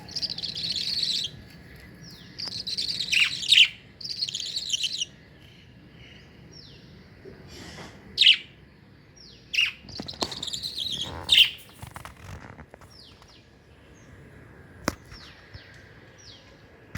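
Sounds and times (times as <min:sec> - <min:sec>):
budgerigars chirping: 0:00.0 - 0:05.1, 0:08.2 - 0:08.6, 0:09.4 - 0:11.7.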